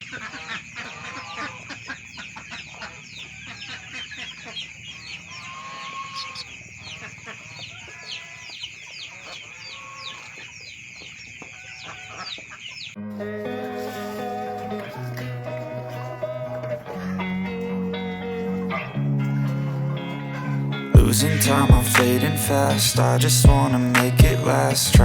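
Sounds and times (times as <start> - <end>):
chickens clucking: 0.0 - 25.0
chicks peeping: 0.0 - 25.0
high-pitched whine: 13.0 - 25.0.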